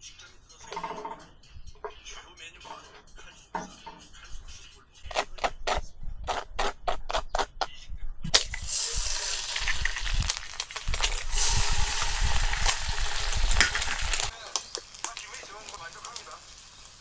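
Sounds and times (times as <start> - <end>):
food sizzling in a pan: 8.4 - 17.0.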